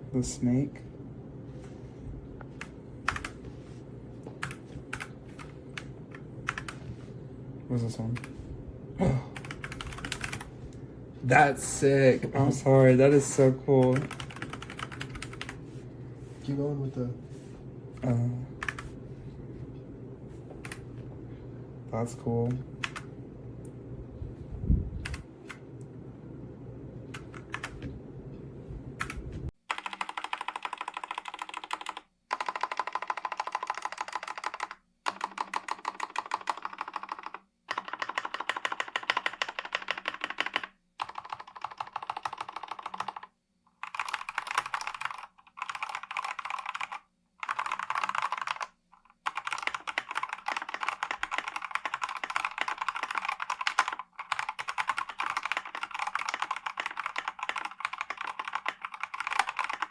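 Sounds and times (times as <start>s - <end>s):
mechanical keyboard typing: 2.5s - 3.4s, 4.4s - 6.9s, 9.4s - 10.5s, 12.9s - 15.6s, 18.6s - 18.9s, 20.6s - 20.8s, 22.4s - 23.1s, 25.0s - 25.6s, 27.1s - 27.9s, 29.0s - 59.9s
low hum: 14.1s - 29.5s.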